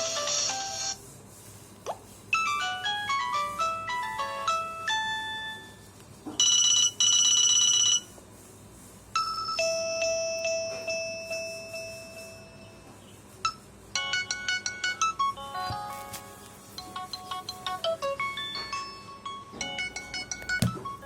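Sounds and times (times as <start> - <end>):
fast melodic ringtone: 2.4 - 5.8, 6.4 - 8.1, 9.2 - 12.4, 14.0 - 15.7, 16.7 - 21.0.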